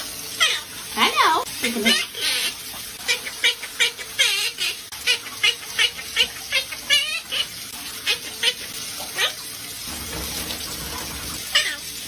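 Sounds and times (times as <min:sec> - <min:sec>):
parrot chirping: 0:00.4 - 0:00.7, 0:01.9 - 0:09.4, 0:11.5 - 0:11.9
parrot warbling call: 0:00.4 - 0:00.7, 0:01.9 - 0:09.4, 0:11.5 - 0:11.9.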